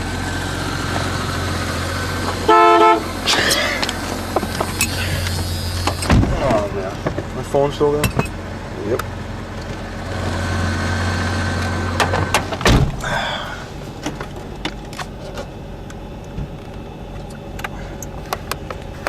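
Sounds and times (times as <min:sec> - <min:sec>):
car engine running: 0:00.0 - 0:19.0
loud thump: 0:05.9 - 0:07.3, 0:12.0 - 0:13.1.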